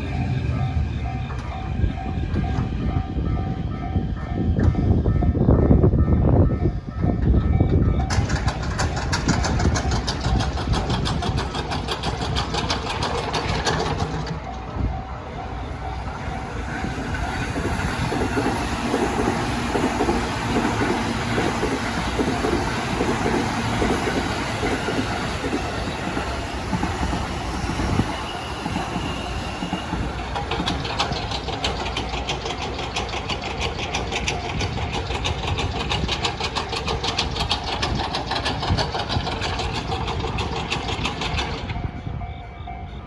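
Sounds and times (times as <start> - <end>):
crossing warning bell ringing: 0.0 - 43.0
train wheels rushing on rails: 0.0 - 43.0
wheels clattering over rail joints: 7.2 - 15.0, 16.3 - 41.9.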